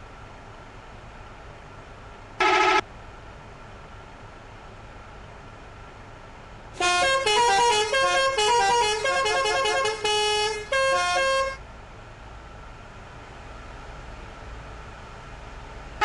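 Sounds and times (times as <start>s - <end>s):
bus horn playing melody: 2.4s - 2.8s, 6.8s - 11.6s.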